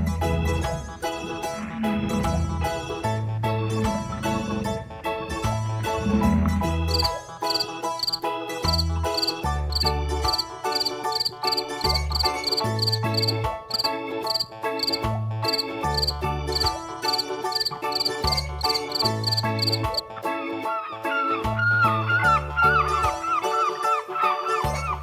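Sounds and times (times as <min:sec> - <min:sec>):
background music with bass line: 0:00.0 - 0:20.4, 0:21.3 - 0:23.4, 0:24.6 - 0:25.0
cricket chirping: 0:06.9 - 0:11.3, 0:12.8 - 0:16.2, 0:17.1 - 0:19.8.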